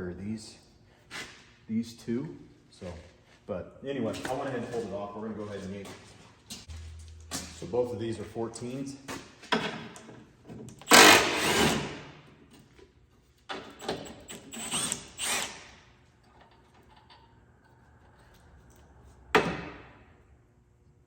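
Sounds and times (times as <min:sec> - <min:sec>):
power tool bursts: 0:10.8 - 0:12.1, 0:14.3 - 0:15.8.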